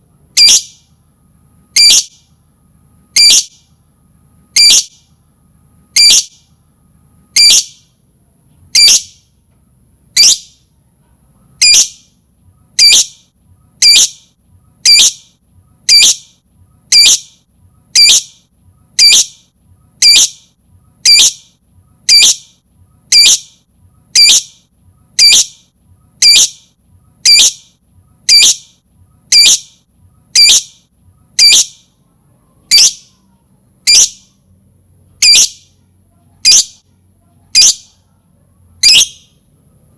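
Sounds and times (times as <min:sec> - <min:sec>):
lovebird shrill calls: 0:00.4 - 0:00.8, 0:01.8 - 0:02.1, 0:03.2 - 0:03.5, 0:04.6 - 0:04.9, 0:06.0 - 0:06.3, 0:07.4 - 0:07.8, 0:08.8 - 0:09.2, 0:10.2 - 0:10.5, 0:11.6 - 0:12.0, 0:12.8 - 0:13.1, 0:13.8 - 0:14.2, 0:14.8 - 0:15.2, 0:15.9 - 0:16.2, 0:16.9 - 0:17.2, 0:18.0 - 0:18.3, 0:19.0 - 0:19.3, 0:20.0 - 0:20.4, 0:21.0 - 0:21.4, 0:22.1 - 0:22.4, 0:23.1 - 0:23.4, 0:24.2 - 0:24.5, 0:25.2 - 0:25.5, 0:26.2 - 0:26.6, 0:27.2 - 0:27.6, 0:28.3 - 0:28.6, 0:29.3 - 0:29.7, 0:30.4 - 0:30.7, 0:31.4 - 0:31.8, 0:32.7 - 0:33.1, 0:33.9 - 0:34.2, 0:35.2 - 0:35.6, 0:36.5 - 0:36.8, 0:37.6 - 0:37.9, 0:38.8 - 0:39.3.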